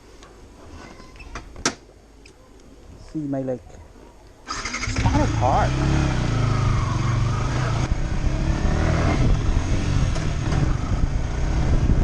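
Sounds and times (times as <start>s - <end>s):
road noise: 3.1s - 12.0s
motorcycle engine drone: 4.5s - 12.0s.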